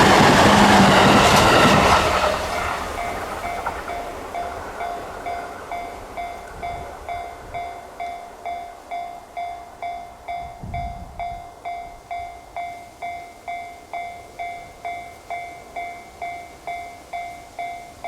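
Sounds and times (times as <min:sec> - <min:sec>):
railroad crossing bell ringing: 0:00.0 - 0:18.0
train rumbling past: 0:00.0 - 0:18.0.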